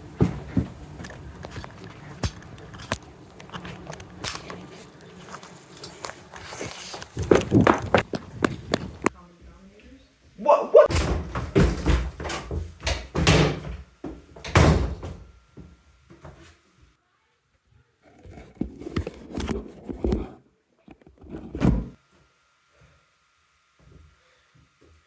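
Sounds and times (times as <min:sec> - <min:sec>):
heavy thuds and bangs: 0:10.9 - 0:13.8.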